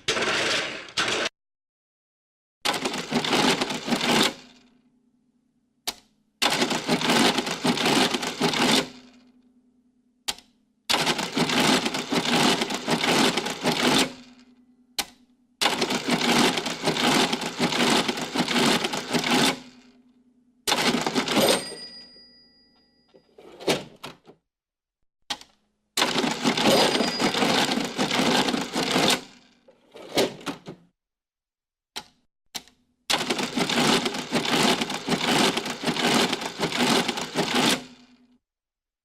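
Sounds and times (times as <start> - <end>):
adding machine clattering: 0.0 - 1.3
sharp click: 10.3 - 10.6.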